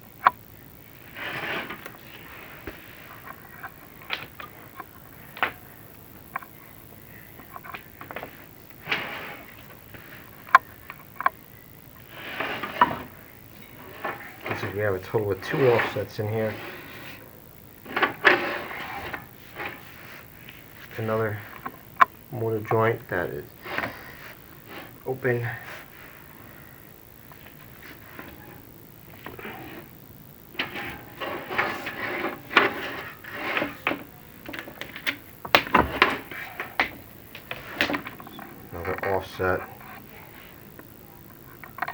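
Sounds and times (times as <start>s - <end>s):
camera cable scraping flue walls: 1.1s - 5.5s, 7.4s - 10.6s, 12.0s - 13.2s, 13.8s - 20.2s, 23.6s - 26.0s, 27.5s - 40.1s.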